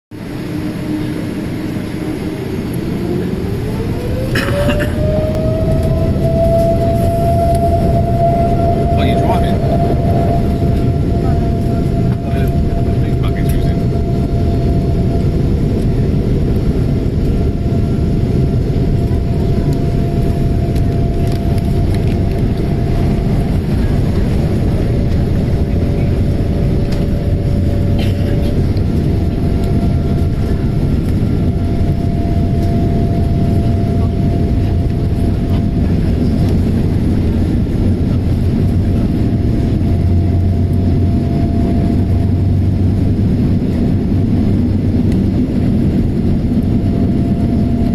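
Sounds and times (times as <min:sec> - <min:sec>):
jet engines rumbling in cabin: 0:00.1 - 0:47.9
thin steady engine whine: 0:00.1 - 0:47.9.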